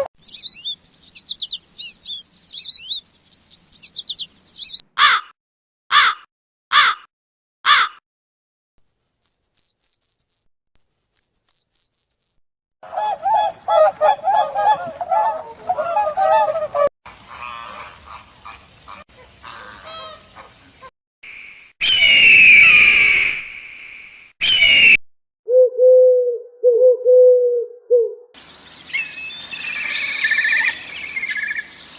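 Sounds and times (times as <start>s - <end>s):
high quick bird chirping: 0.2s - 4.8s, 8.8s - 12.4s
harsh caws: 5.0s - 5.3s, 5.9s - 7.1s, 7.7s - 8.0s
harsh drawn-out bird scream: 8.8s - 12.4s, 21.8s - 25.0s, 28.4s - 31.9s.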